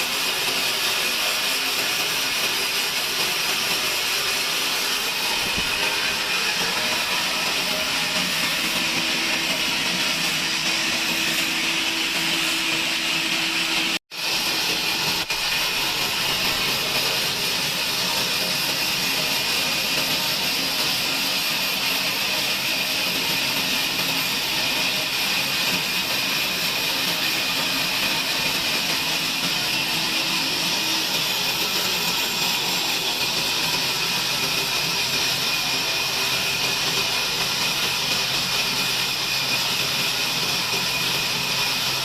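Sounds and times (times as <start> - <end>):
bandsaw cutting log: 0.0 - 42.0.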